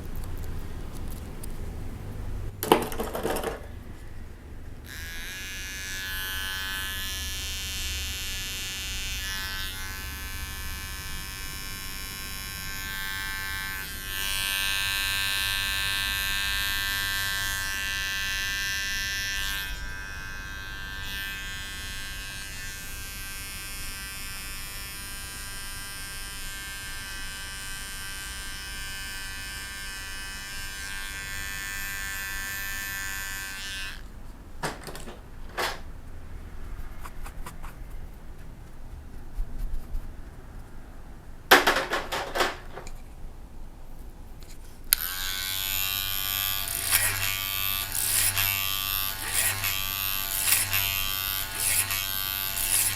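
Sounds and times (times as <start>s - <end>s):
electric hair clippers buzzing: 4.8s - 34.0s, 44.9s - 52.9s.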